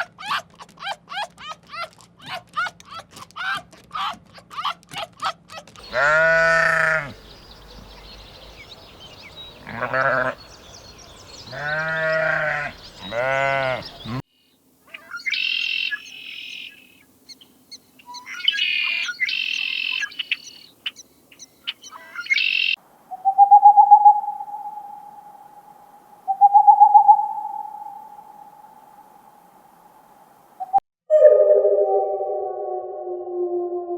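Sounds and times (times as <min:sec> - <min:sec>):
bleats: 0:03.4 - 0:07.2, 0:11.5 - 0:14.2
high-pitched bird chirping: 0:14.9 - 0:25.5, 0:26.3 - 0:28.7
loud pulsing calls: 0:14.9 - 0:28.9.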